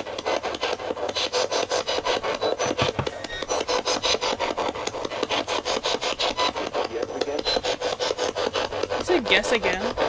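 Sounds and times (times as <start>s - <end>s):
rapid chopping radio static: 2.2s - 3.7s.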